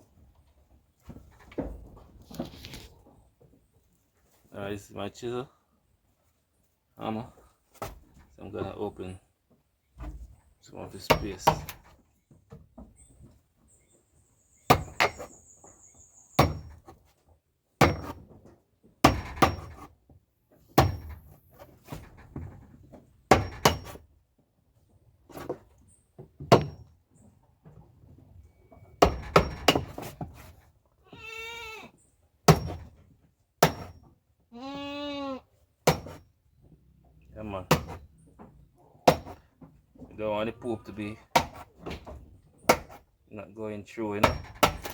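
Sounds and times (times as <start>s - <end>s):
hammer striking chisel into wood: 16.4s - 16.8s, 17.8s - 18.2s, 19.0s - 19.8s, 20.8s - 21.2s, 23.3s - 24.0s, 29.0s - 30.0s, 33.6s - 33.9s, 35.8s - 36.2s, 37.7s - 38.0s, 39.0s - 39.4s, 44.2s - 44.9s
goat bleating: 31.0s - 32.0s, 34.5s - 35.5s.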